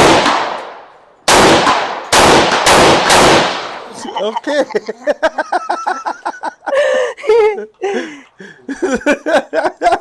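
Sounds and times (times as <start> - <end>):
people laughing and chattering: 3.9 - 10.0.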